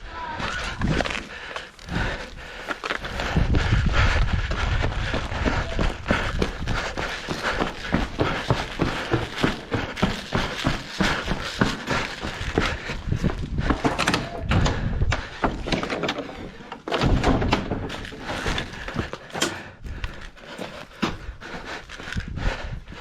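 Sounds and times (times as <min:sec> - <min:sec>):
irregular thumps and knocks: 0:06.3 - 0:21.4.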